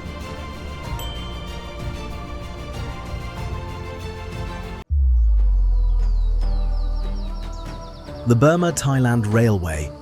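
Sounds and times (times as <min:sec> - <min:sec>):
orchestral background music: 0:00.0 - 0:05.0.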